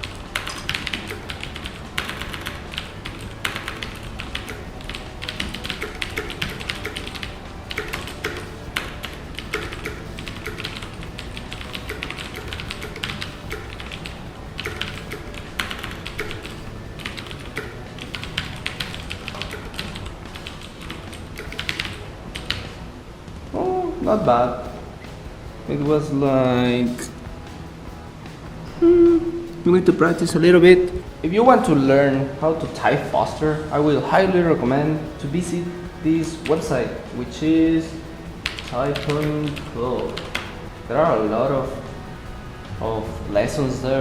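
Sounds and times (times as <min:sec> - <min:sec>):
clicky mechanical keyboard typing: 0:00.1 - 0:22.7, 0:38.4 - 0:40.5.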